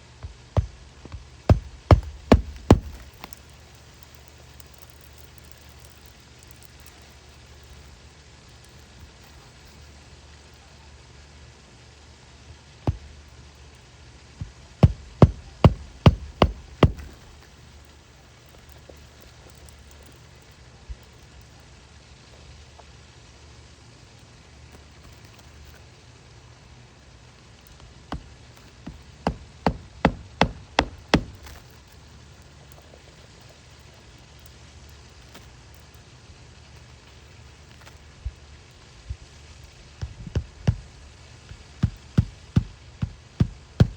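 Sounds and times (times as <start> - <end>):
steady low hum: 0.0 - 8.6, 12.8 - 21.5
loud sharp knocks: 0.2 - 3.4, 14.4 - 17.2, 28.9 - 31.6, 41.5 - 43.9
hammer driving nail: 0.6 - 3.4, 14.8 - 17.2, 28.9 - 31.6, 41.8 - 43.9.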